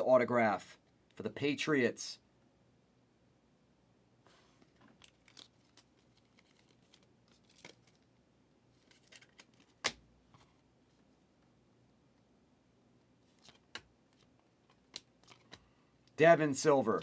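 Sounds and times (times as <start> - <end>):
trading cards and wrappers rustling: 4.3 - 8.1, 8.7 - 10.6, 13.2 - 17.0.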